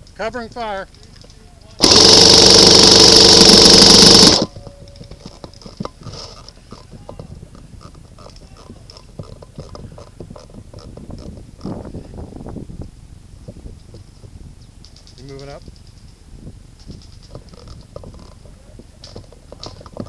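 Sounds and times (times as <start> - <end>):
airsoft rifle full-auto burst: 1.8 - 4.5.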